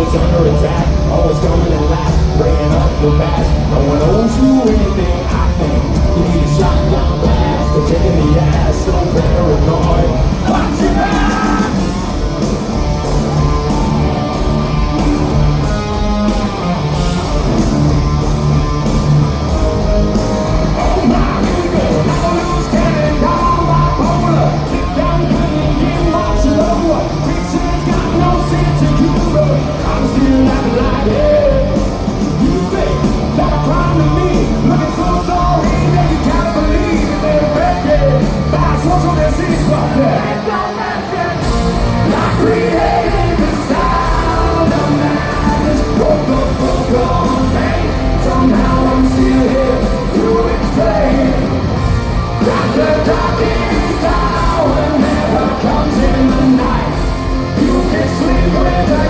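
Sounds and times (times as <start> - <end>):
person singing: 0.0 - 12.5, 20.2 - 59.0
live hard rock band: 0.0 - 59.0.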